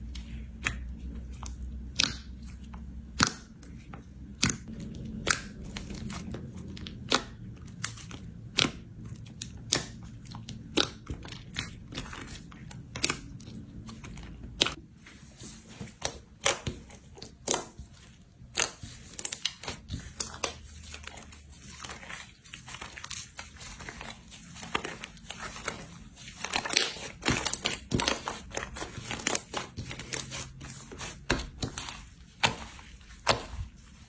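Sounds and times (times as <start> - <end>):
slime popping and crackling: 4.3 - 13.8, 21.8 - 33.8.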